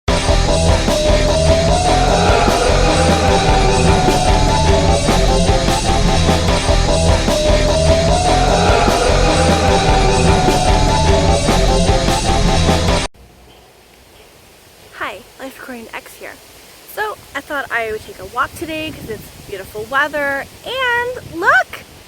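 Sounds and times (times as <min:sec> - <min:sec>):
loud rock music: 0:00.1 - 0:13.1.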